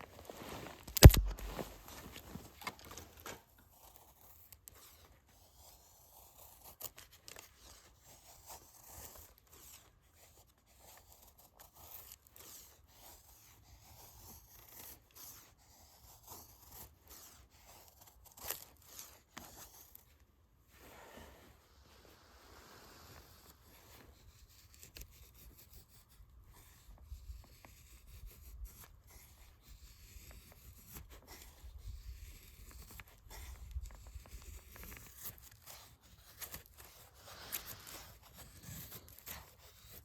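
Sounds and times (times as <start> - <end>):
knife scraping wood: 0.4 - 20.1, 23.0 - 40.0
sharp knock: 1.0 - 1.8.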